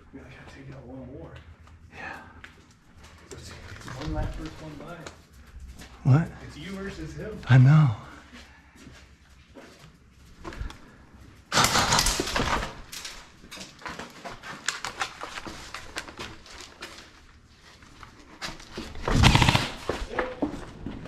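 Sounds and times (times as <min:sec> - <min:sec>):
airsoft gunfire bursts: 0:11.5 - 0:12.6, 0:19.1 - 0:19.8.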